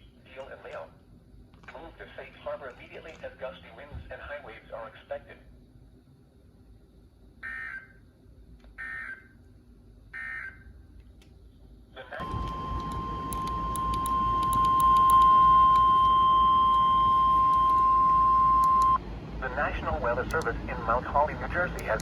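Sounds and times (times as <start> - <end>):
radio hiss and crackle: 0.1 - 1.0, 1.6 - 5.5, 11.9 - 22.0
steady warning alarm tone: 7.4 - 8.0, 8.8 - 9.3, 10.2 - 10.7, 12.2 - 22.0.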